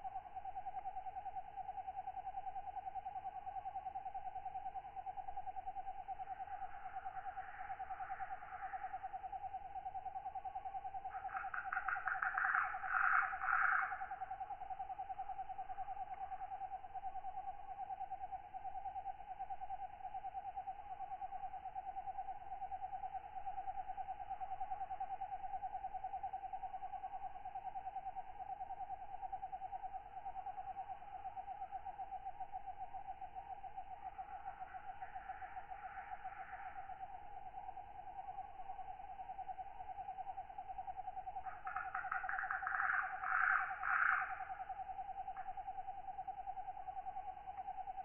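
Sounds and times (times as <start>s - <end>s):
insects trilling: 0.0s - 48.0s
rasping katydid call: 11.1s - 14.4s, 41.4s - 45.6s.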